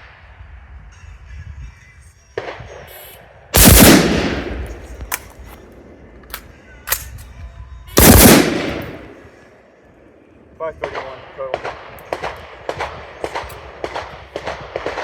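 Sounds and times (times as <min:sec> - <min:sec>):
loud gunshots: 0:03.6 - 0:04.8, 0:08.0 - 0:09.2, 0:10.8 - 0:15.0
quieter gun cracks: 0:03.6 - 0:07.3, 0:08.0 - 0:09.3, 0:11.6 - 0:15.0.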